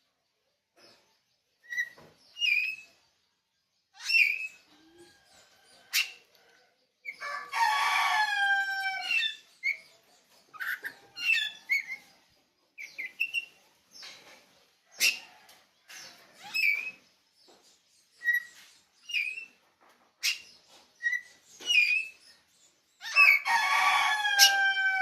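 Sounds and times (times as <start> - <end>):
bird singing whistles and chirps: 1.6 - 3.0, 4.0 - 4.7, 12.8 - 13.6, 18.1 - 19.6, 20.2 - 22.4.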